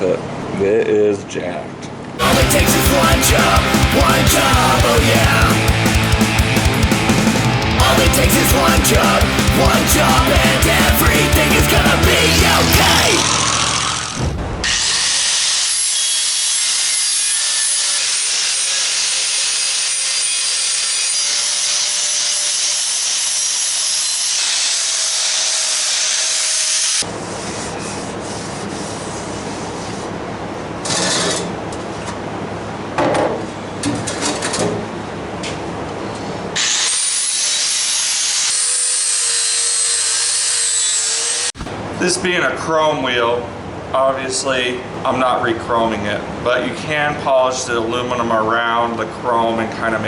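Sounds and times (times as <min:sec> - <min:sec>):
power tool grinding metal: 0:02.2 - 0:27.0, 0:36.6 - 0:41.5.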